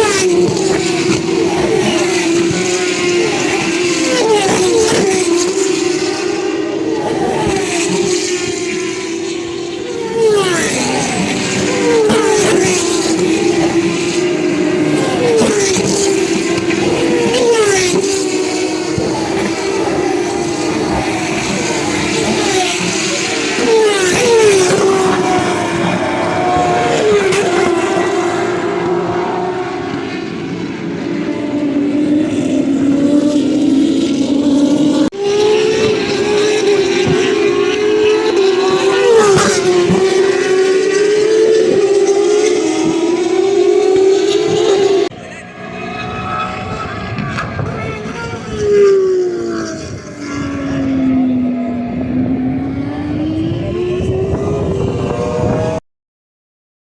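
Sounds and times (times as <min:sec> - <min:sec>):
race car engines running hard: 0:00.0 - 0:55.8.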